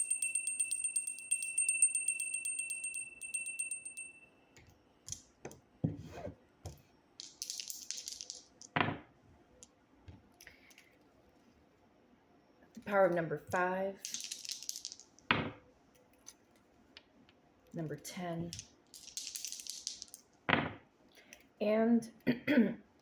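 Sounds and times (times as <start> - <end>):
small bell ringing: 0.0 - 4.7.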